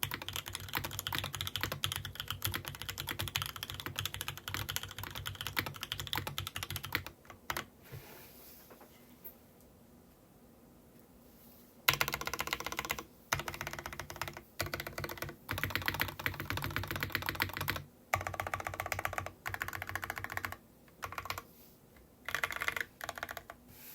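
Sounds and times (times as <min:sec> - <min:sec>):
mechanical keyboard typing: 0:00.0 - 0:07.7, 0:11.9 - 0:21.4, 0:22.2 - 0:23.6.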